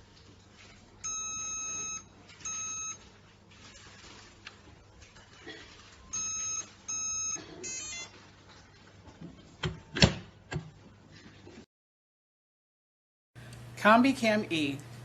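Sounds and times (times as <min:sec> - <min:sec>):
electronic lock beeping: 0:06.2 - 0:08.1.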